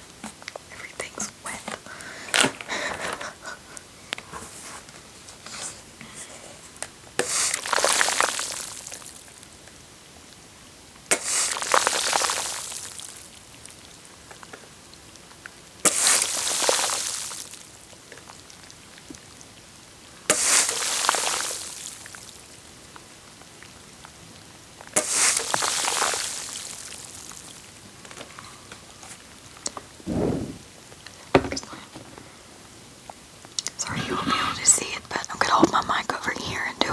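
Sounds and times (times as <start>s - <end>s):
hissing splashy liquid bursts: 25.0s - 27.2s.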